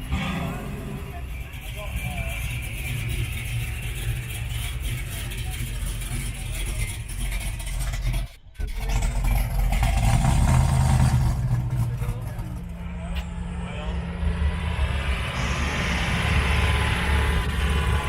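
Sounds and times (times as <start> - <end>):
car engine driving past: 8.8 - 18.0.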